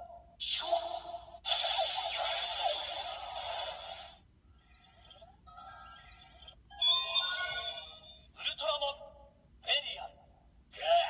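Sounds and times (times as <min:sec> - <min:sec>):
toy electronic sound effects: 0:00.4 - 0:08.2.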